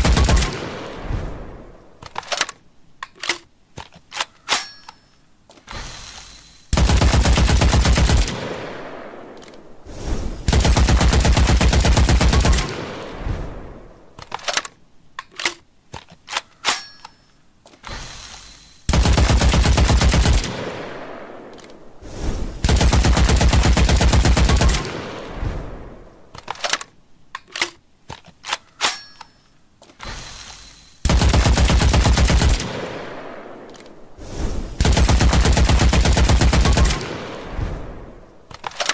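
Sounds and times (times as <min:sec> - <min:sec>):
machine-gun bursts: 0:06.0 - 0:08.3, 0:30.2 - 0:32.7, 0:34.8 - 0:37.0.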